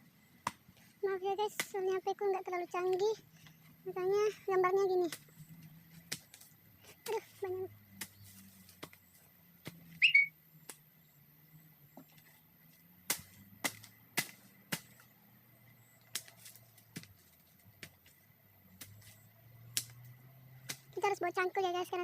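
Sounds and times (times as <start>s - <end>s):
high rising whistle-like chirp: 10.0s - 10.4s.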